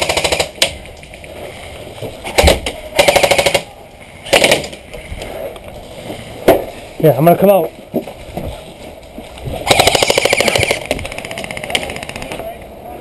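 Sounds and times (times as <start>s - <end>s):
airsoft gun firing bursts: 0.0s - 0.7s, 3.0s - 3.6s, 4.3s - 4.7s, 9.6s - 12.4s.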